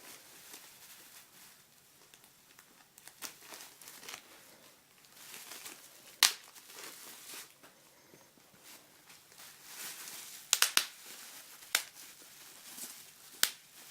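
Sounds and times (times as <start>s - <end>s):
bubble wrap crinkling: 0.0s - 7.8s, 8.4s - 13.9s
bubble wrap pop: 6.1s - 6.8s, 10.4s - 12.0s, 13.3s - 13.9s.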